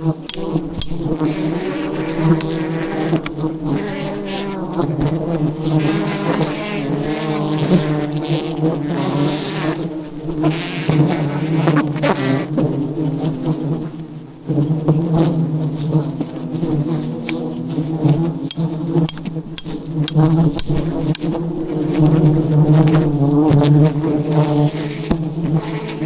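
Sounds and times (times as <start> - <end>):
bees buzzing: 0.0 - 26.0
sharp clicks and knocks: 0.2 - 1.4, 18.5 - 21.3.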